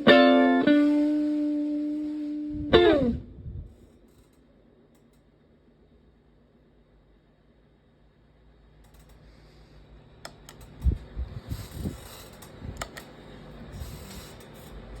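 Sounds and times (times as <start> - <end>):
irregular clicks: 10.2 - 11.0, 12.3 - 13.2.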